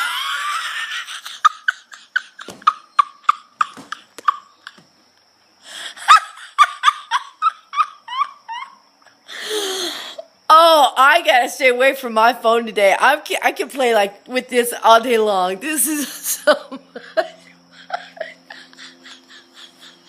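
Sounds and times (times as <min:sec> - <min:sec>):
person laughing hard: 0:00.0 - 0:04.8, 0:06.0 - 0:08.8, 0:16.2 - 0:20.0.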